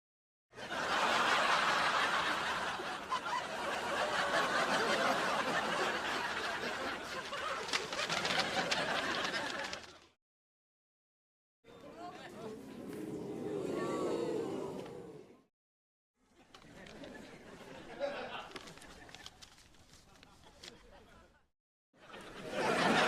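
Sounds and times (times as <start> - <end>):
studio audience laughing: 0.6 - 10.1, 16.4 - 19.3, 20.1 - 23.0.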